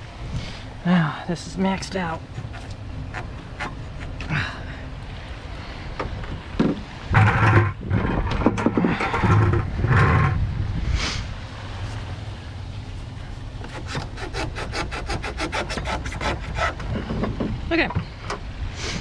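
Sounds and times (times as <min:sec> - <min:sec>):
rubber hose rubbing and scraping: 0:01.8 - 0:04.6, 0:06.6 - 0:12.1, 0:12.9 - 0:17.2.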